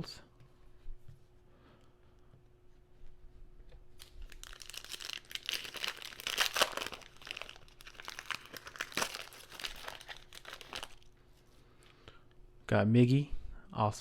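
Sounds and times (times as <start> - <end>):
wrapper tearing and crinkling: 4.0 - 11.1.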